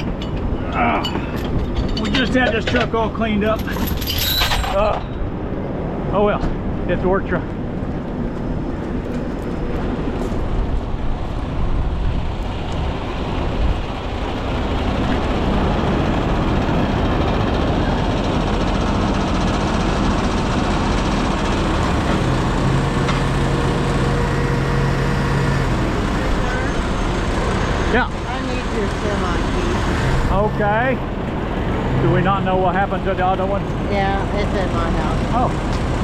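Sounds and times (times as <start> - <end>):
diesel truck engine running: 9.7 - 36.0.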